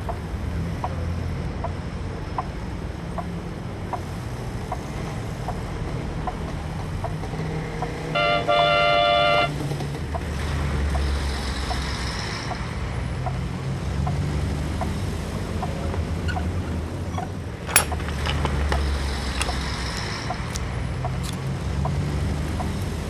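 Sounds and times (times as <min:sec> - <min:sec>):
traffic rumble: 0:00.0 - 0:23.0
faint clicks: 0:17.1 - 0:23.0.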